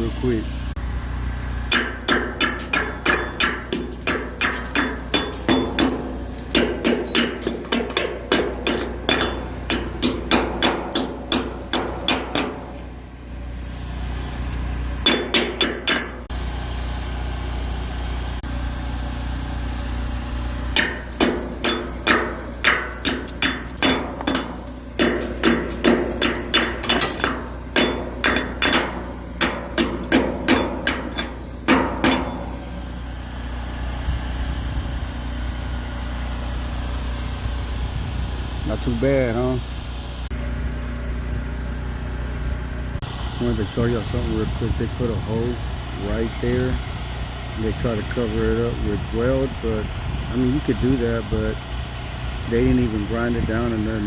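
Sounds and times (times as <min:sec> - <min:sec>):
chipping hammer striking metal: 0:01.7 - 0:12.9, 0:15.0 - 0:16.3, 0:20.8 - 0:32.8.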